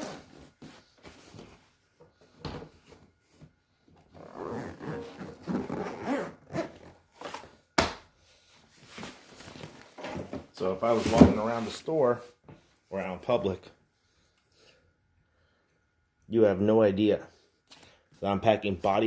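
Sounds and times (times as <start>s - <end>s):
zipper: 4.1s - 7.4s.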